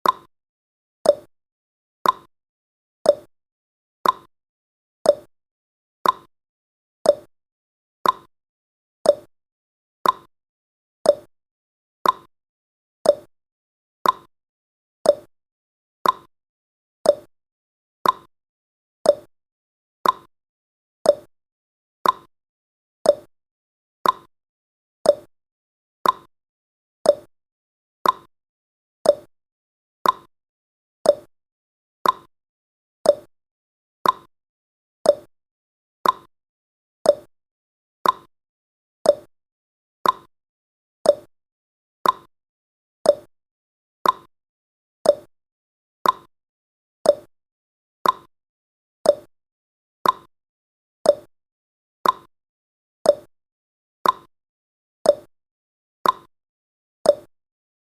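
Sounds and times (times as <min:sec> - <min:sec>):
timer ticking: 0:00.0 - 0:00.3, 0:01.1 - 0:01.3, 0:02.0 - 0:02.3, 0:03.1 - 0:03.3, 0:04.0 - 0:04.3, 0:05.1 - 0:05.3, 0:06.0 - 0:06.3, 0:07.1 - 0:07.3, 0:08.0 - 0:08.3, 0:09.1 - 0:09.3, 0:10.0 - 0:10.3, 0:11.1 - 0:11.3, 0:12.0 - 0:12.3, 0:13.1 - 0:13.3, 0:14.0 - 0:14.3, 0:15.1 - 0:15.3, 0:16.0 - 0:16.3, 0:17.1 - 0:17.3, 0:18.0 - 0:18.3, 0:19.1 - 0:19.3, 0:20.0 - 0:20.3, 0:21.1 - 0:21.3, 0:22.0 - 0:22.3, 0:23.1 - 0:23.3, 0:24.0 - 0:24.3, 0:25.1 - 0:25.3, 0:26.0 - 0:26.3, 0:27.1 - 0:27.3, 0:28.0 - 0:28.3, 0:29.0 - 0:29.3, 0:30.0 - 0:30.3, 0:31.0 - 0:31.3, 0:32.0 - 0:32.3, 0:33.1 - 0:33.3, 0:34.0 - 0:34.3, 0:35.1 - 0:35.3, 0:36.0 - 0:36.3, 0:37.1 - 0:37.3, 0:38.0 - 0:38.3, 0:39.1 - 0:39.3, 0:40.0 - 0:40.3, 0:41.1 - 0:41.3, 0:42.0 - 0:42.3, 0:43.1 - 0:43.3, 0:44.0 - 0:44.3, 0:45.0 - 0:45.3, 0:46.0 - 0:46.3, 0:47.1 - 0:47.3, 0:48.0 - 0:48.3, 0:49.1 - 0:49.3, 0:50.0 - 0:50.3, 0:51.1 - 0:51.3, 0:52.0 - 0:52.3, 0:53.1 - 0:53.3, 0:54.0 - 0:54.3, 0:55.1 - 0:55.3, 0:56.0 - 0:56.3, 0:57.1 - 0:57.3.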